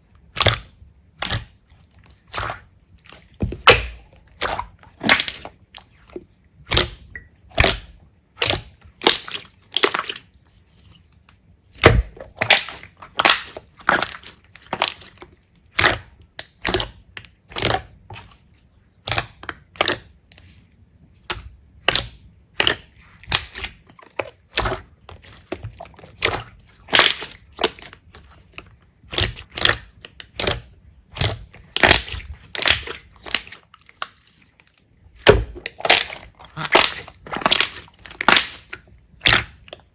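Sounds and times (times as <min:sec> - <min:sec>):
crunchy slime crackling when squeezed: 0:35.2 - 0:39.7.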